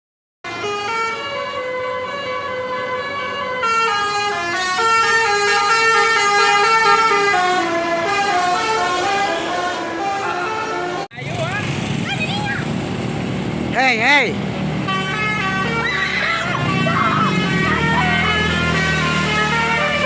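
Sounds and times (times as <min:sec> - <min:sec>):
bus air horns playing a tune: 0:00.5 - 0:02.4, 0:03.6 - 0:11.1, 0:14.8 - 0:20.0.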